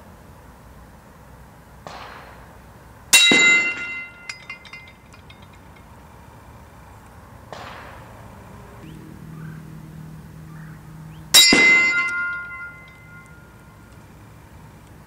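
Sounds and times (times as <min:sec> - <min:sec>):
bullet clanging on steel plate: 0:03.2 - 0:06.0, 0:11.4 - 0:13.5
rifle shots with echo: 0:07.5 - 0:08.4.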